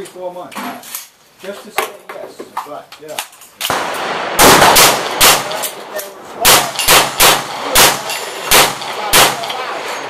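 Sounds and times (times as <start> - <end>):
gunshots with ringing tail: 3.7 - 5.8, 6.4 - 9.9.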